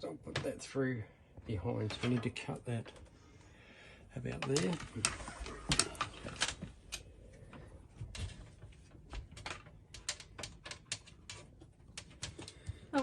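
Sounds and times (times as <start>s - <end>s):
clicks and knocks on plastic hose: 4.3s - 13.0s.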